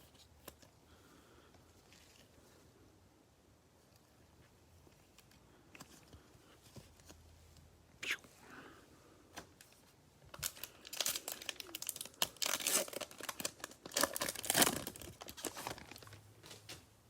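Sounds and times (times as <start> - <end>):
foil wrapper tearing and crinkling: 10.4 - 16.2.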